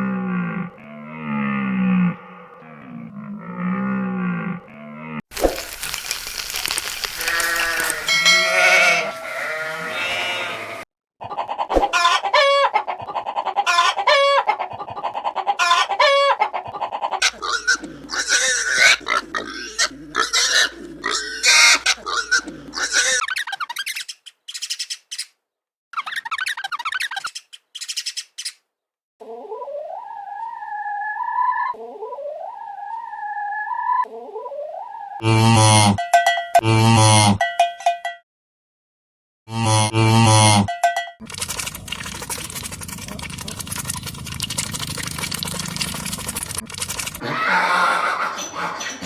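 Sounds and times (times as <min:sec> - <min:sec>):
farm animal calls: 0:00.0 - 0:24.0, 0:29.2 - 0:35.9, 0:45.5 - 0:49.0.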